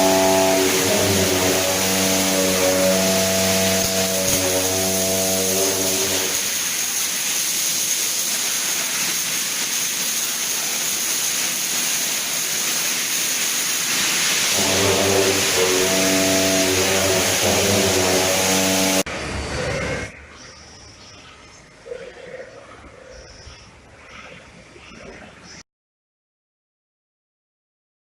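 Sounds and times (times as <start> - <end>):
buzzing hum: 0.0 - 6.8, 14.5 - 19.1
welding arc crackling hiss: 0.0 - 19.1.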